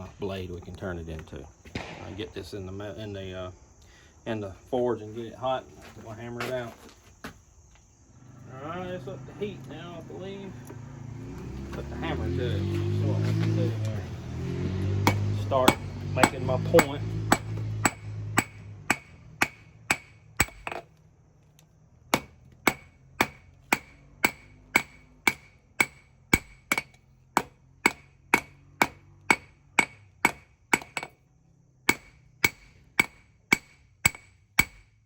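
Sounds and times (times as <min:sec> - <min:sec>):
hammer striking steel on anvil: 0:14.8 - 0:20.8, 0:22.2 - 0:31.1, 0:31.9 - 0:34.9.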